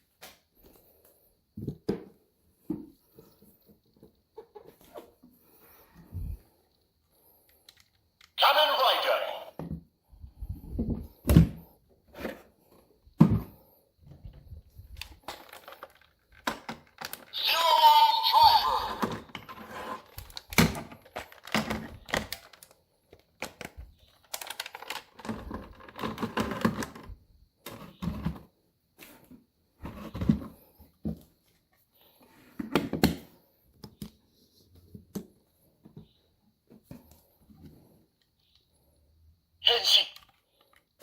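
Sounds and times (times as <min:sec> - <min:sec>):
plastic toy parts clicking: 0:07.6 - 0:08.4.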